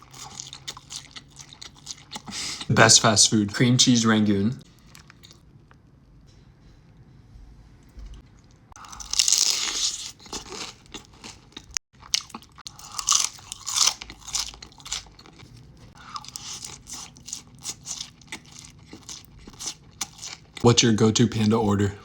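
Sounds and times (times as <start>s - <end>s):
crunching and chewing: 0.0s - 2.7s, 4.6s - 5.9s, 8.0s - 20.6s
crunchy bite into fried food: 8.8s - 15.3s.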